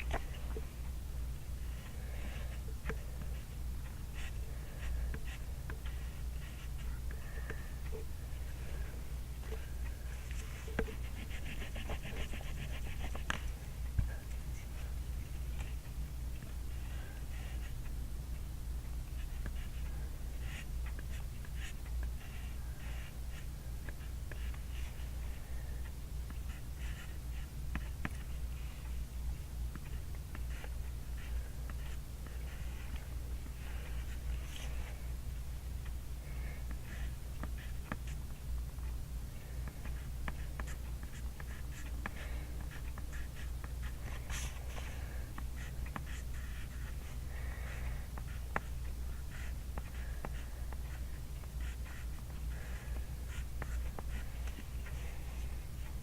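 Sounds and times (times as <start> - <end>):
steady low hum: 0.0 - 56.0
pen scratching on paper: 9.6 - 13.5, 25.8 - 28.9, 29.7 - 35.0, 39.6 - 56.0.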